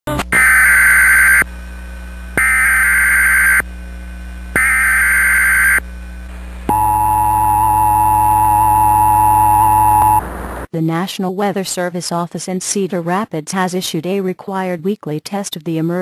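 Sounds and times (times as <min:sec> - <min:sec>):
screeching digital data bursts: 0:02.4 - 0:03.6, 0:04.6 - 0:05.8.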